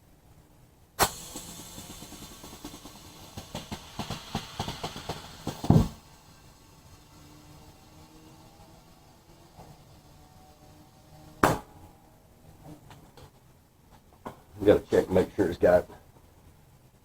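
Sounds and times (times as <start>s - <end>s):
tire bead thump: 1.0s - 6.2s, 11.3s - 11.9s
tire bead popping: 1.0s - 12.0s
compressed air hissing into tire: 1.0s - 12.1s.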